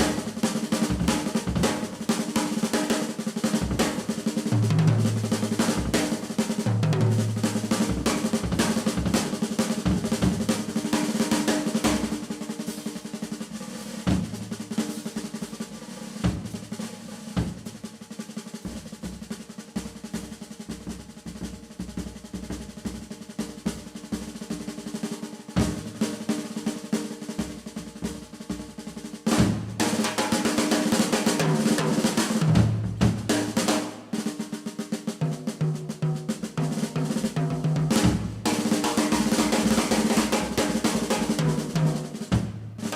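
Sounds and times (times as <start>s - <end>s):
jazz drum kit solo: 0.0s - 42.9s.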